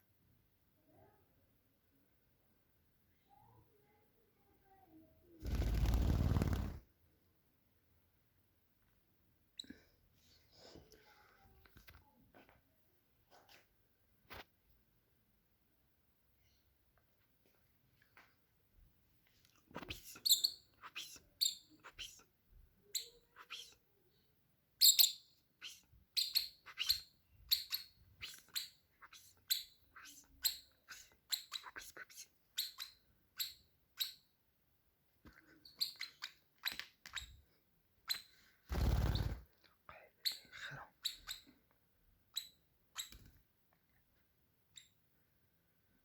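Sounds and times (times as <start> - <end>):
small bird chirping: 19.9 - 24.2, 24.8 - 34.4, 35.5 - 37.4, 38.0 - 39.4, 40.1 - 41.6, 42.3 - 43.4, 44.7 - 45.0.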